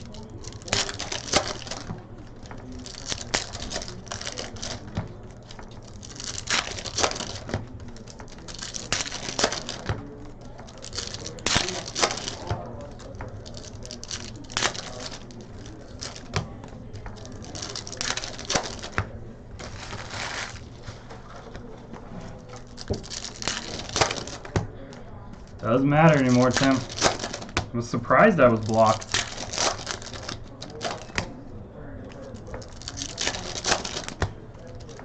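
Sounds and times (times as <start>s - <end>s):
foil wrappers crinkling and tearing: 0.0s - 19.0s, 19.6s - 20.9s, 22.4s - 31.3s, 32.0s - 35.0s.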